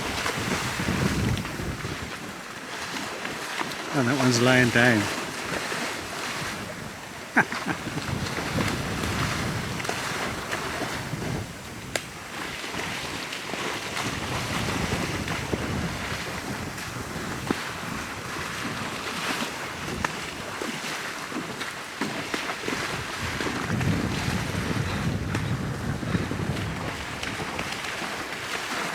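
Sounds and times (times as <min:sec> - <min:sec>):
wind buffeting microphone: 0:00.0 - 0:03.4, 0:04.2 - 0:20.8, 0:22.4 - 0:28.8
water sloshing: 0:00.0 - 0:19.4.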